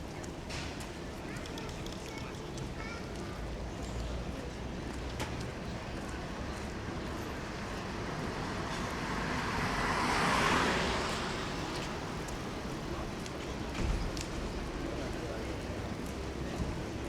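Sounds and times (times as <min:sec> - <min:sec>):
street noise: 0:00.0 - 0:17.0
car tyres hissing on wet street: 0:08.4 - 0:13.3.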